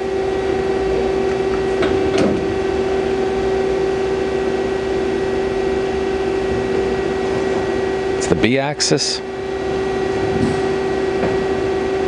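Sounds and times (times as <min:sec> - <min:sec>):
machine tool humming: 0:00.0 - 0:12.0.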